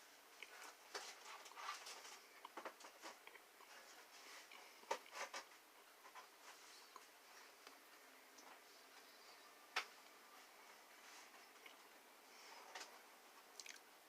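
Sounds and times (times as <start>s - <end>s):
person chewing food: 13.5s - 13.9s.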